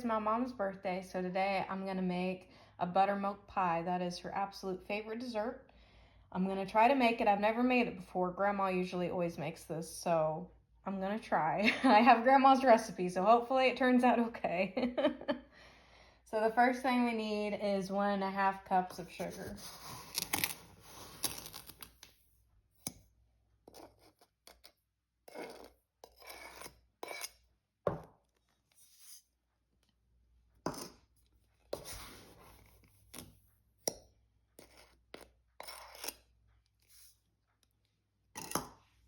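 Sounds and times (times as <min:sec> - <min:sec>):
cup scooping and pouring sugar: 0:19.1 - 0:22.0.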